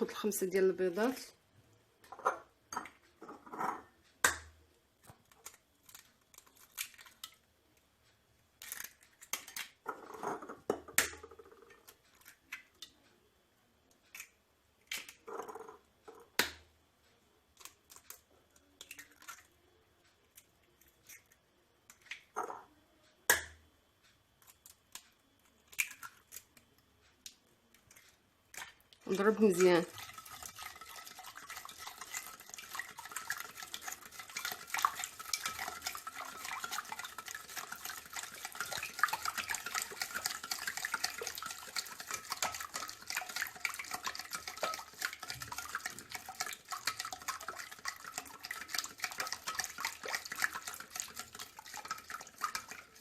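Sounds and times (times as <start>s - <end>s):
eggshell crackling: 27.8s - 53.0s.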